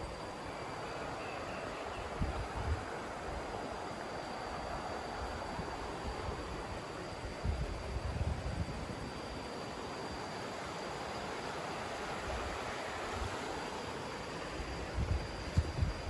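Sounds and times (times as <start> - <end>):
faint steady high tone: 0.0 - 16.0
steady rushing hiss: 0.0 - 16.0
wind buffets on microphone: 2.0 - 3.5, 5.2 - 9.2, 14.6 - 16.0.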